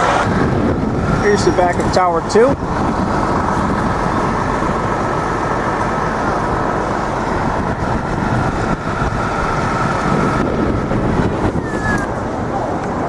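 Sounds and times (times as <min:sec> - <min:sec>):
faint high steady whine: 0:00.0 - 0:13.0
passing vehicles rumble and hiss: 0:00.0 - 0:13.0.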